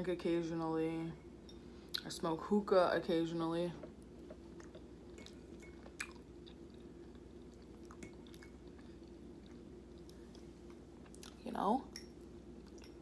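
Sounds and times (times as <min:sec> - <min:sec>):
faint steady hum: 0:00.0 - 0:13.0
chewing soft food: 0:04.0 - 0:11.4.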